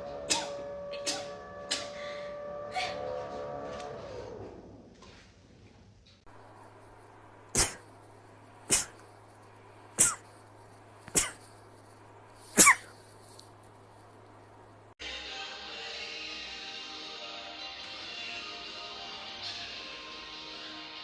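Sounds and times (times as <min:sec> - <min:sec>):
person sneezing: 0:07.6 - 0:07.9, 0:08.7 - 0:09.1, 0:10.0 - 0:10.4, 0:11.1 - 0:11.5, 0:12.5 - 0:13.0.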